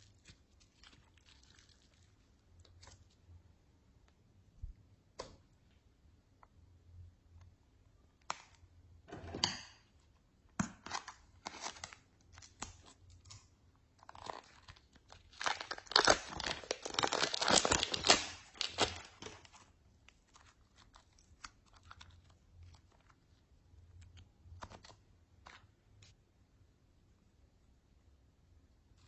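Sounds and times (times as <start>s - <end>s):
slime squishing by hand: 0.0s - 6.6s, 9.8s - 26.2s.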